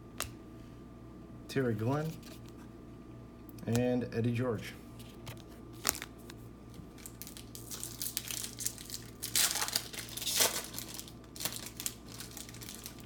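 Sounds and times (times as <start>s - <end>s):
wrapper crinkling as torn open: 5.4s - 13.0s.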